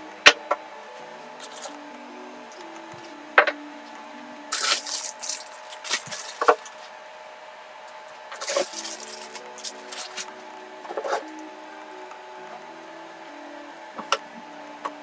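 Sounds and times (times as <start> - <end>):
cardboard and plastic rustling: 1.4 - 1.8, 4.5 - 7.0, 8.4 - 11.4
sharp crackle: 4.5 - 6.7.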